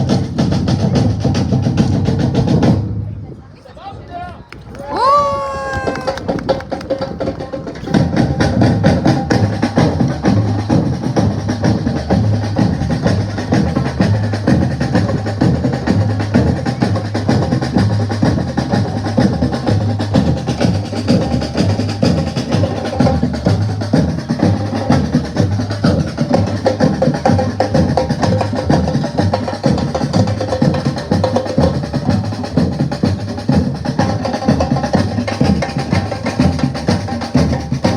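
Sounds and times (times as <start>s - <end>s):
drums playing fast rhythm: 0.0s - 3.0s, 5.8s - 37.9s.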